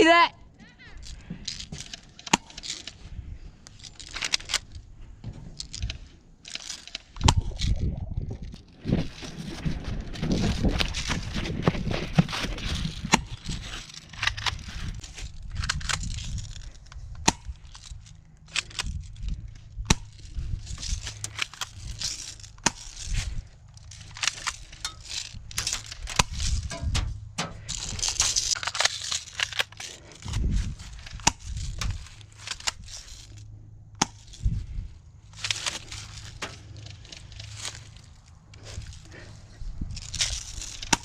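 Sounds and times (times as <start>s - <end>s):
crunching through dry leaves: 5.6s - 33.5s, 34.1s - 41.0s
low rumble on microphone: 7.2s - 13.8s.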